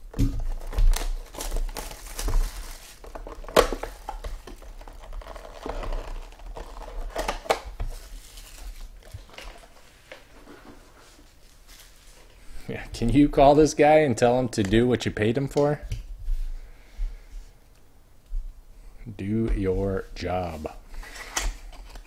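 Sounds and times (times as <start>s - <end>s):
card packaging crinkling: 0.1s - 10.2s.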